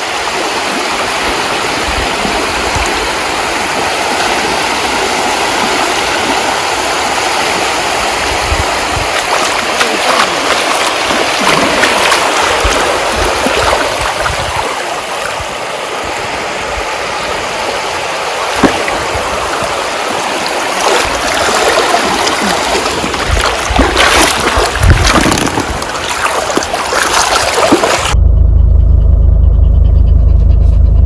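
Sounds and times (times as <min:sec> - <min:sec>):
seawater washing and splashing: 0:00.0 - 0:28.2
low thumps: 0:22.9 - 0:26.1.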